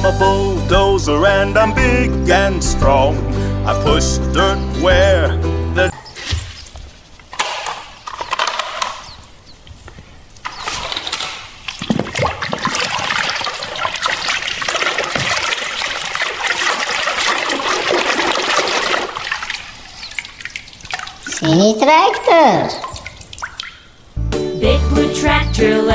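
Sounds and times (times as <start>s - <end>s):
water running and splashing: 5.9s - 24.2s.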